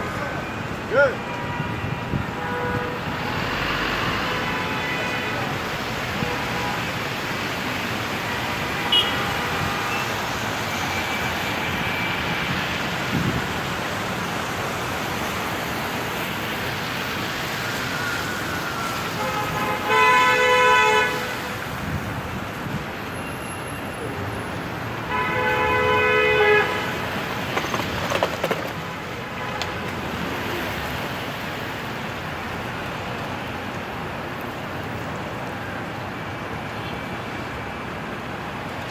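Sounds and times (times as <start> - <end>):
street traffic: 0.0 - 38.9
car horns honking: 8.8 - 10.2, 19.2 - 21.5, 25.0 - 27.0.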